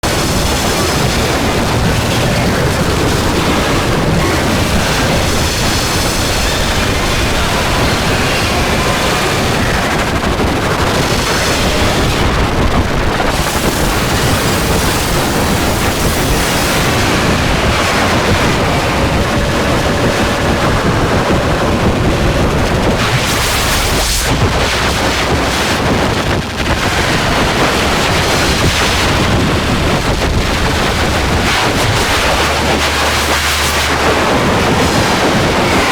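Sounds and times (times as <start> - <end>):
harsh distorted noise music: 0.0 - 35.9.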